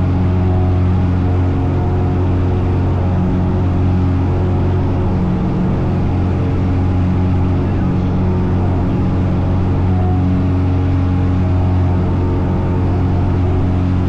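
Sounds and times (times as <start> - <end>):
propeller plane engine drone: 0.0 - 14.0.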